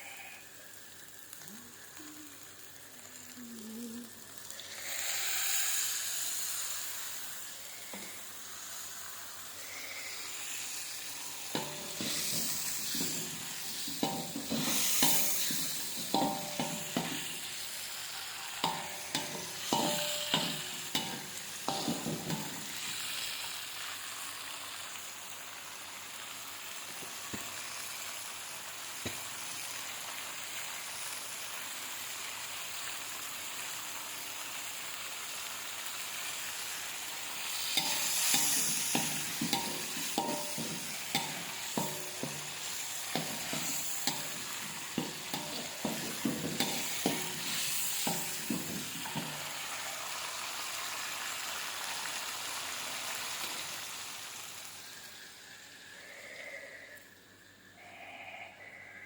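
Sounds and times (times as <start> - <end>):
food sizzling in oil: 0.0 - 55.9
utensil scraping a pan: 11.2 - 17.7, 18.5 - 23.1, 37.5 - 49.6.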